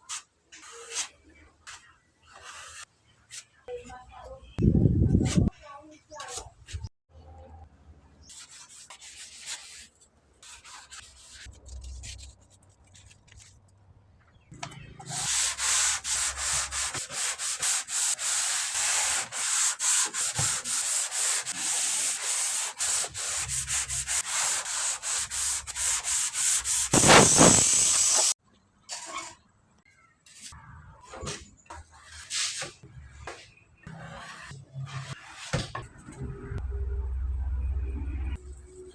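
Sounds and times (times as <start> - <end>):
sandpaper sanding body filler: 15.1 - 28.3.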